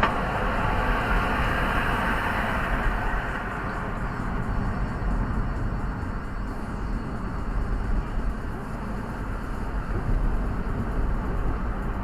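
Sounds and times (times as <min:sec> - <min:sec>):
car road and engine noise: 0:00.0 - 0:12.0.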